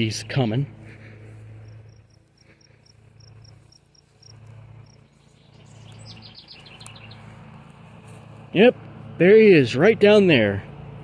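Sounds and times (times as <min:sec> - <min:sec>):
steady low hum: 0:00.0 - 0:11.0
insect chirping in pulses: 0:01.6 - 0:05.0.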